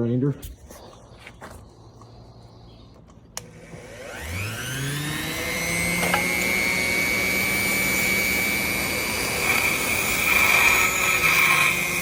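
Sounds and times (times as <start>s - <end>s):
electric grinder whine: 3.4s - 12.0s.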